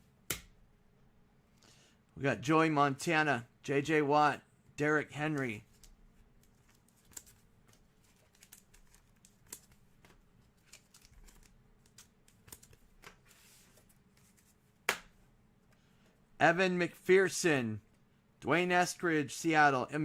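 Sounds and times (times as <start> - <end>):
trading cards being flipped: 5.3 - 15.1.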